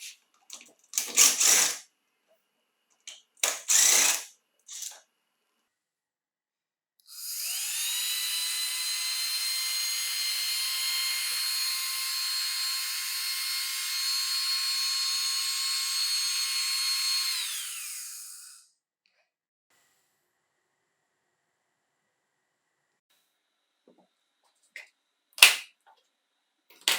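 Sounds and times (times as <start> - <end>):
power tool motor whining: 1.0 - 1.8, 3.4 - 5.0, 7.1 - 18.6.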